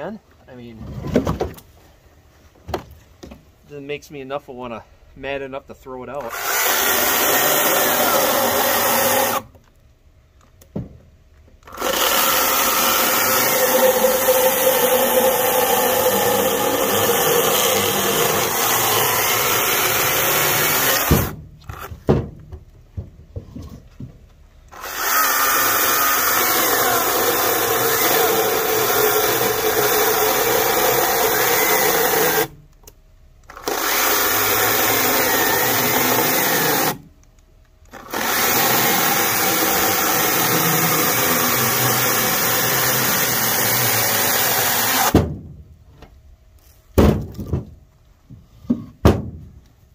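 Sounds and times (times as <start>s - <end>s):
electric chainsaw cutting: 6.2s - 9.5s, 11.6s - 21.9s, 24.7s - 32.6s, 33.5s - 37.0s, 37.9s - 45.2s.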